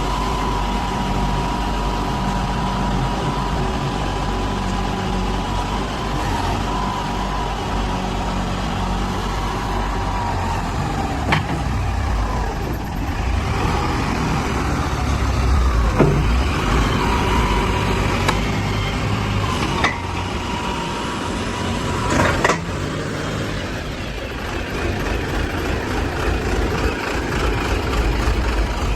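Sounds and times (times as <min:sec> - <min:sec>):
diesel engine running: 0:00.0 - 0:28.9
high engine whine: 0:00.0 - 0:28.9
sharp knocks and clanks: 0:15.7 - 0:17.1.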